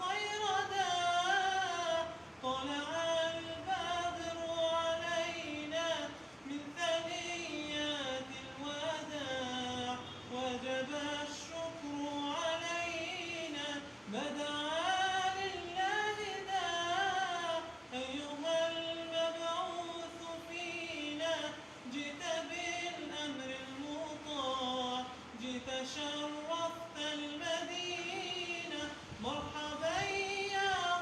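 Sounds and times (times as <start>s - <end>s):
person singing unaccompanied: 0.0s - 31.0s.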